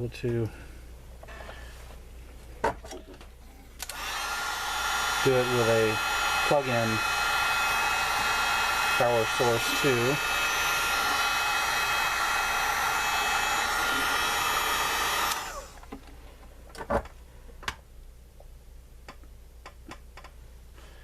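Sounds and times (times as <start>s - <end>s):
electric blower motor running: 3.8s - 15.8s.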